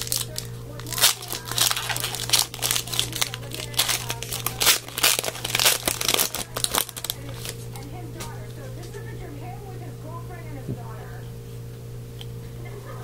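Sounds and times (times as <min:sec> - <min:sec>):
wrapper tearing and crinkling: 0:00.0 - 0:07.8.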